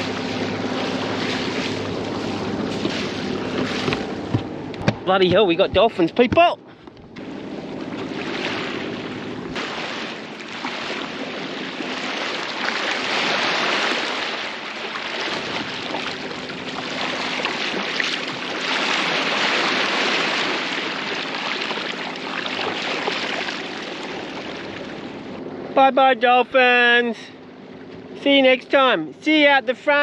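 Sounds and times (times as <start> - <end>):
steady low hum: 0.0 - 12.6
water rushing along hull: 0.0 - 30.0.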